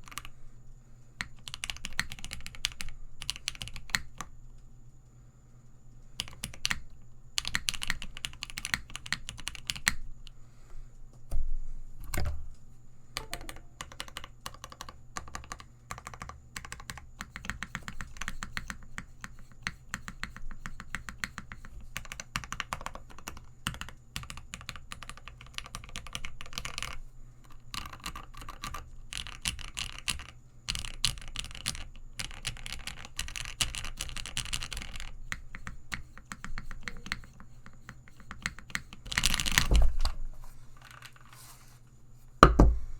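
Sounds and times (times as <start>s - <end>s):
fast typing on mechanical keyboard: 0.0s - 0.4s, 1.2s - 4.3s, 6.2s - 10.1s, 13.2s - 39.7s.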